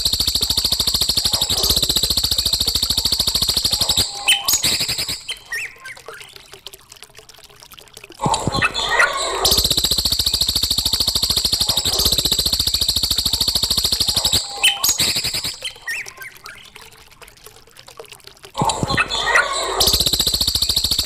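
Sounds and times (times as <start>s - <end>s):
songbird trilling and whistling: 3.3s - 6.0s, 13.1s - 16.6s.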